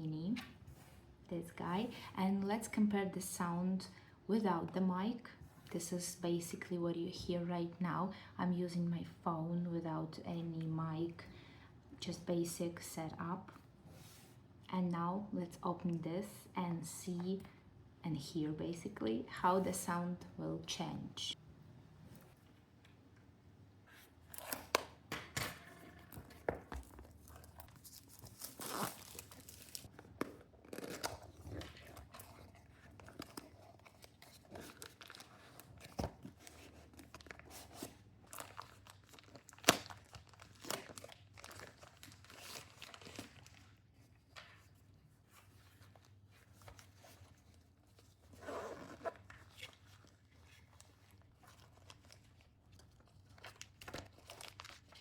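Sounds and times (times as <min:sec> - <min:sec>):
packaging tearing and crinkling: 0:25.7 - 0:44.2, 0:51.1 - 0:55.0.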